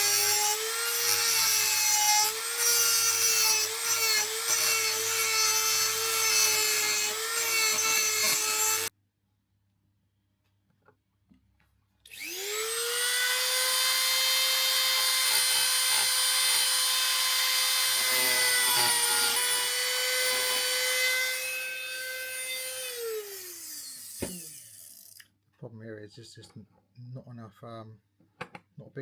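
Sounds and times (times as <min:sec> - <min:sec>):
rotary tool whining: 0:12.1 - 0:25.2.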